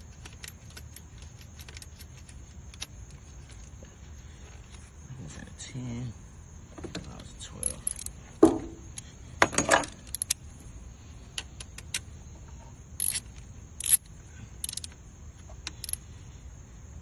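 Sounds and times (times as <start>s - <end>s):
metallic clicks and clinks: 7.0s - 8.2s, 8.9s - 10.4s, 13.0s - 15.0s, 15.6s - 16.0s.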